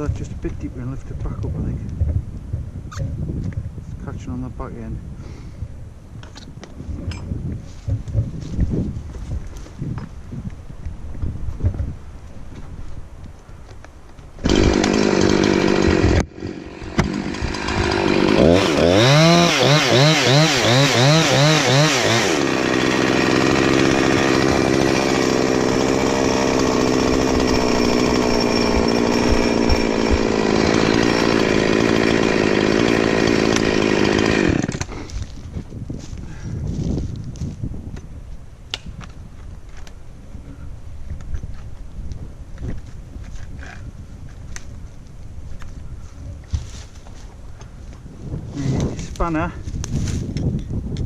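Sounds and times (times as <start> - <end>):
chainsaw cutting wood: 14.4 - 35.6.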